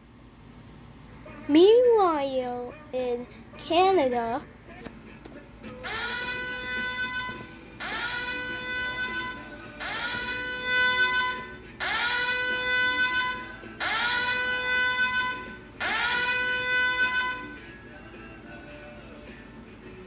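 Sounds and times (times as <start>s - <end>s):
buzzy electronic alert tone: 5.9s - 17.5s.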